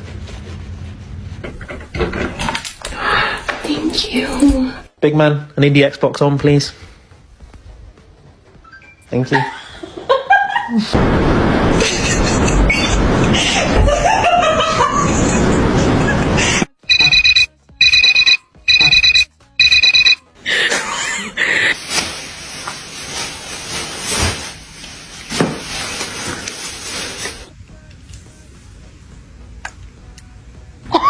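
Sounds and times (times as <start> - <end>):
background music: 3.6 - 10.9, 16.8 - 21.8, 27.5 - 31.0
two-tone electronic beeps: 16.8 - 20.3.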